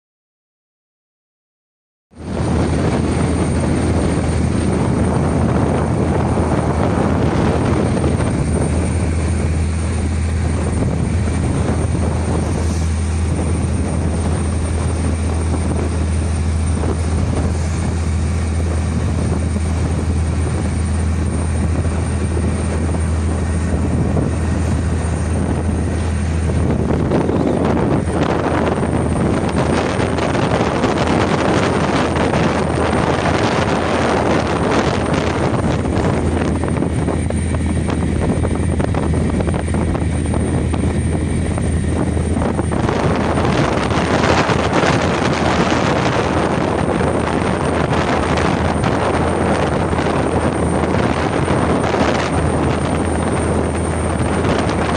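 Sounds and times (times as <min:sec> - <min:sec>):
low motor drone: 0:02.1 - 0:54.9
rushing wash of noise: 0:02.1 - 0:54.9.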